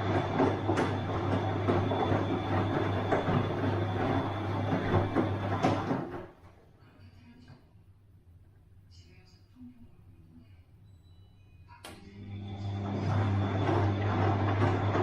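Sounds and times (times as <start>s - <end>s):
washing machine running: 0.0s - 6.5s, 11.9s - 15.0s.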